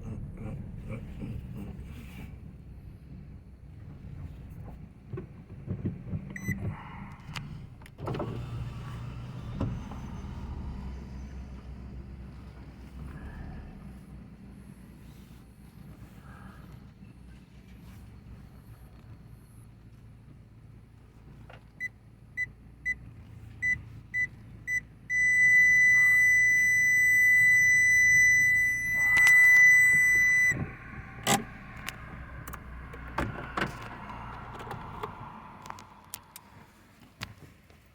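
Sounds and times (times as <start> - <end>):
long steady electronic beep: 23.6 - 30.6
sharp clicks and knocks: 30.6 - 36.5.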